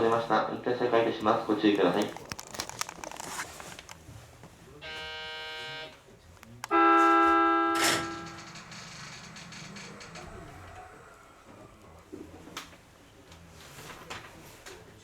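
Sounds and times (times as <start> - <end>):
electric train horn: 4.8 - 6.0, 6.6 - 11.6.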